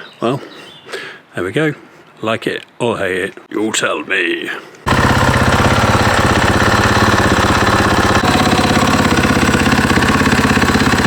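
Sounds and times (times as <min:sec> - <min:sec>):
motorcycle engine idling: 0:04.9 - 0:11.0.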